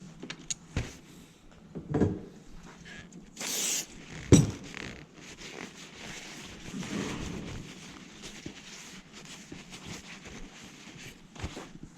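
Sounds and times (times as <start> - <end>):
short scraping slide: 6.7 - 7.8.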